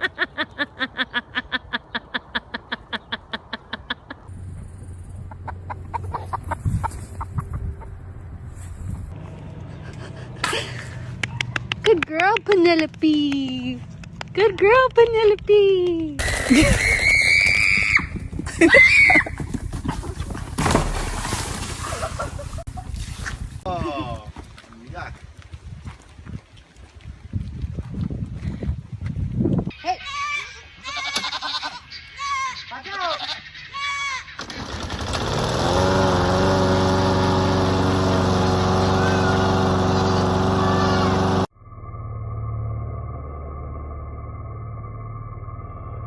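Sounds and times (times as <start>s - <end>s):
farm animal crying: 29.8s - 34.4s
goat bleating: 30.8s - 34.2s
loud engine-like drone: 35.3s - 46.0s.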